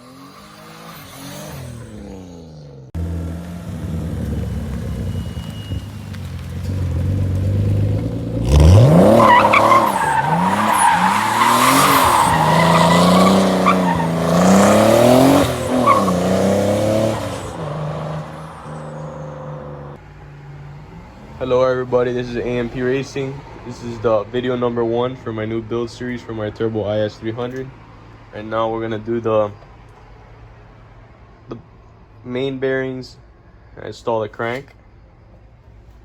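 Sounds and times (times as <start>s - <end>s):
car engine revving: 0.0s - 23.4s
tyres squealing: 3.6s - 19.9s.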